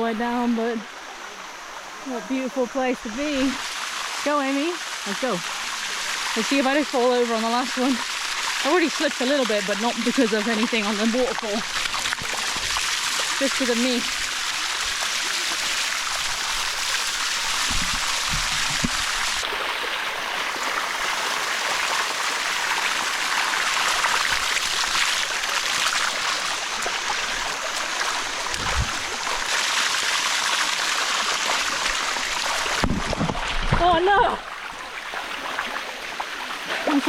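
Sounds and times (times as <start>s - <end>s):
waterfall running over rocks: 0.0s - 37.0s
dull bumps: 28.5s - 29.2s.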